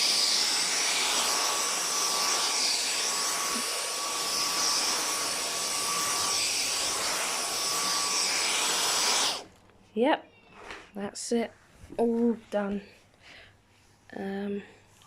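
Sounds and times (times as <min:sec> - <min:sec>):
vacuum cleaner running: 0:00.0 - 0:09.5.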